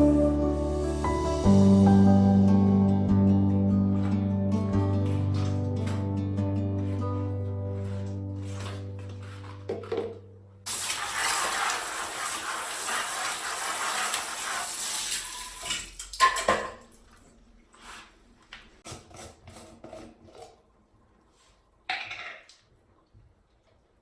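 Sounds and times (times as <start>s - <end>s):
items clattering in sink: 6.9s - 11.9s, 14.9s - 17.4s, 21.9s - 22.7s
tap water running into sink: 10.7s - 17.2s.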